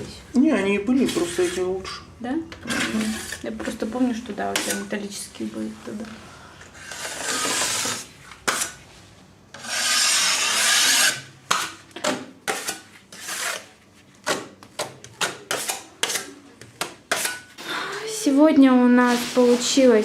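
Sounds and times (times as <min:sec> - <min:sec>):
hand tool rasping on hard surface: 0:09.6 - 0:11.3, 0:12.5 - 0:13.7.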